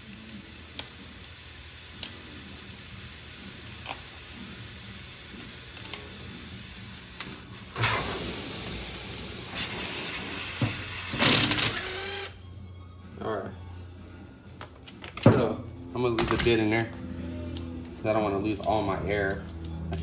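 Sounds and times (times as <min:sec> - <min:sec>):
air hissing out of tire: 0:00.0 - 0:11.2.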